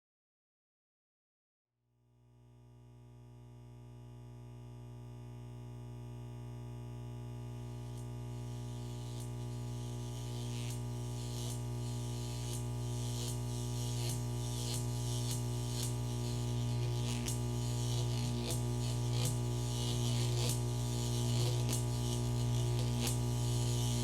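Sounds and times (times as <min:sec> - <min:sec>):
electrical buzz: 0:06.1 - 0:24.0
electric crackles and zaps: 0:07.7 - 0:24.0.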